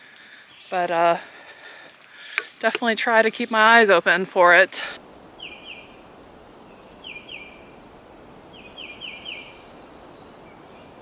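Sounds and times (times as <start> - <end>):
steady outdoor hiss: 0.0 - 11.0
songbird whistling: 5.0 - 11.0.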